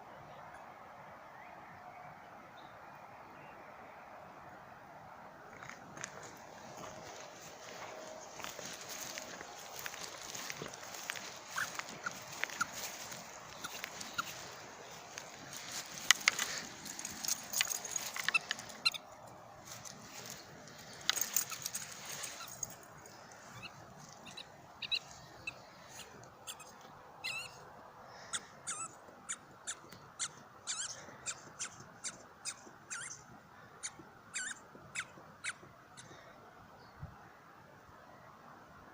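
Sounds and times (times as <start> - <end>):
scuffling: 5.7 - 26.2
squeaky toy ball squeaking: 17.6 - 19.1, 26.4 - 27.5, 28.3 - 31.8, 32.4 - 33.2, 34.3 - 35.6.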